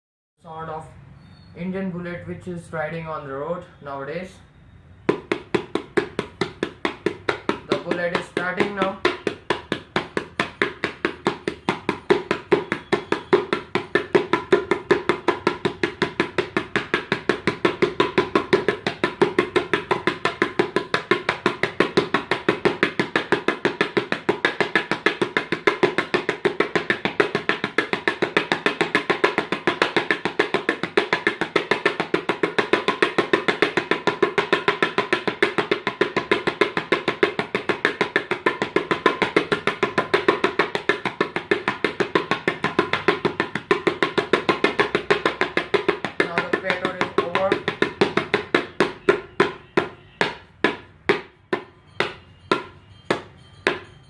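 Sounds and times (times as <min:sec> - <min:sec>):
tabla played in fast strokes: 0:05.1 - 0:54.0.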